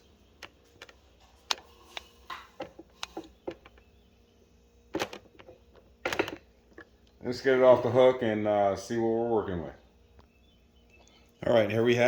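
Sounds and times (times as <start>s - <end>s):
footsteps clicking and knocking: 0.0s - 4.0s, 4.9s - 6.9s.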